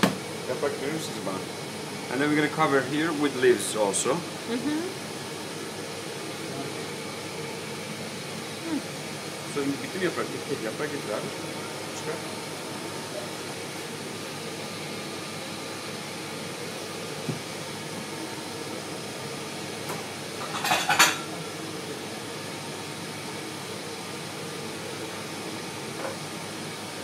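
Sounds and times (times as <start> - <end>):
ventilation hum: 0.0 - 27.0
kitchenware clatter: 20.4 - 21.3.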